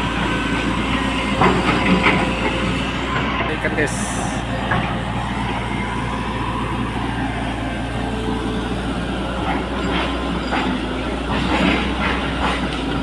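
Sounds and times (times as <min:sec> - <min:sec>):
excavator diesel engine running: 0:00.0 - 0:13.0
metal knocks and clanks: 0:01.3 - 0:02.6, 0:04.6 - 0:05.0, 0:09.4 - 0:13.0.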